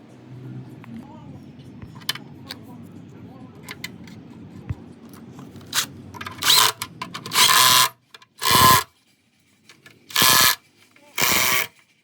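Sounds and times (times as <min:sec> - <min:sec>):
short loud bursts of tool noise: 0:06.4 - 0:08.9, 0:10.1 - 0:11.8.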